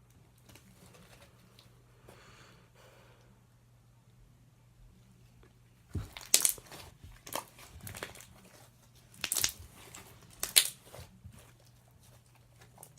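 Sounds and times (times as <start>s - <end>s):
slime squishing with sticky pops: 6.0s - 12.9s.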